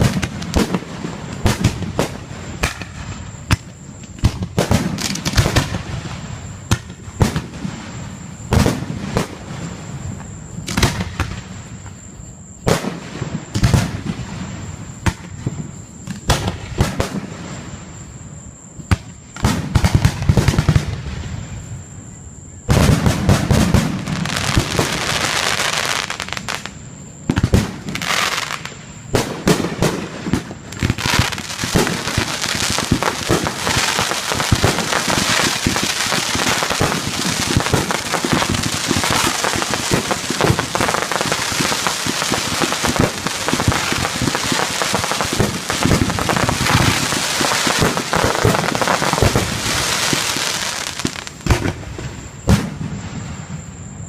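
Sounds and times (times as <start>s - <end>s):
fireworks crackling: 0.0s - 11.6s, 22.7s - 53.9s
fireworks bangs and booms: 0.0s - 21.9s, 22.6s - 54.0s.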